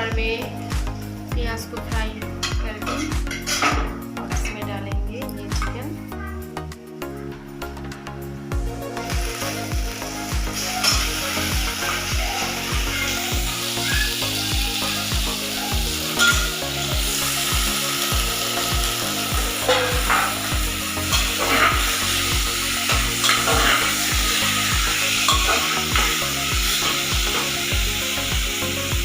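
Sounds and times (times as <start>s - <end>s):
chicken sizzling in hot oil: 8.6s - 29.0s
spatula scraping pan: 19.5s - 22.1s.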